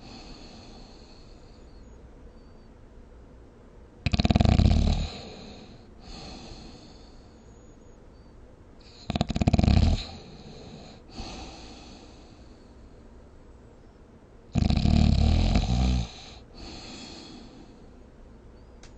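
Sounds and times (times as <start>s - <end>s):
soft breath: 0.0s - 2.0s, 5.0s - 8.0s, 10.0s - 13.1s, 16.1s - 18.1s
loud rattling snores: 4.0s - 6.7s, 8.8s - 12.0s, 14.5s - 17.5s.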